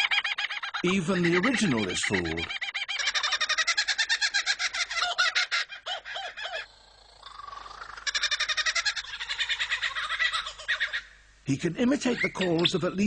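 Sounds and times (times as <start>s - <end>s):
kookaburra laughing call: 0.0s - 11.2s, 11.9s - 12.8s.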